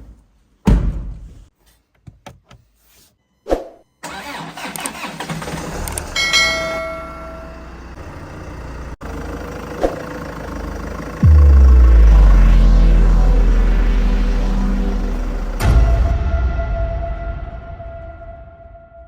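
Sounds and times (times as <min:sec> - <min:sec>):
car door thudding shut: 0:00.6 - 0:01.2
diesel engine starting and running: 0:04.0 - 0:16.2
loud music: 0:11.2 - 0:17.6.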